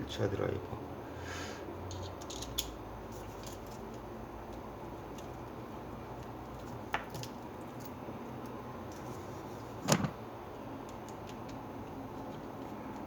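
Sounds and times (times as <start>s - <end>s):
small parts clicking: 1.9s - 2.8s.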